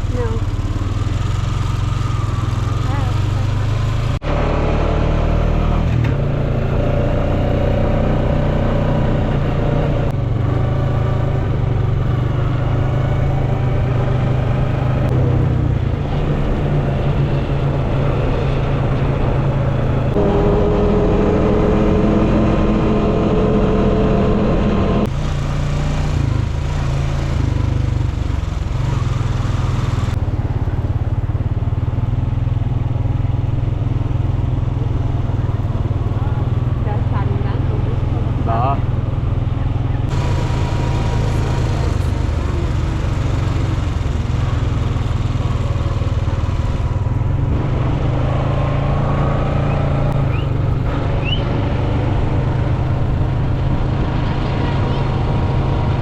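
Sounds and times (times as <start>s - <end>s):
quad bike engine revving: 0.0s - 56.0s.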